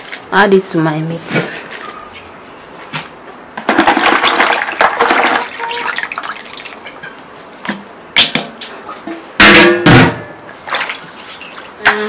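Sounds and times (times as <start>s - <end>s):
water pouring into a pot: 3.9s - 6.9s.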